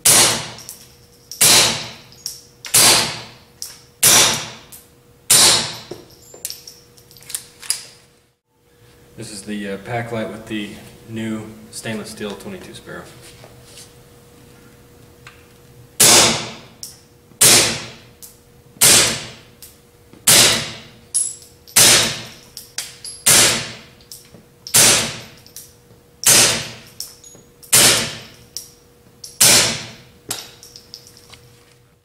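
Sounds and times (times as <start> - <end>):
suppressed pistol shots: 5.3 - 5.8, 16.0 - 16.5, 21.8 - 22.3, 24.7 - 25.2, 26.2 - 26.8, 27.8 - 28.2, 29.4 - 29.9.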